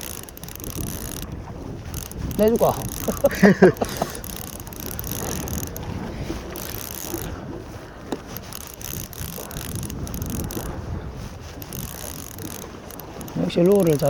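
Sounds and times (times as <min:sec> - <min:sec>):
fishing reel clicking and ratcheting: 0:00.0 - 0:14.0
person speaking: 0:02.3 - 0:04.3, 0:13.3 - 0:14.0.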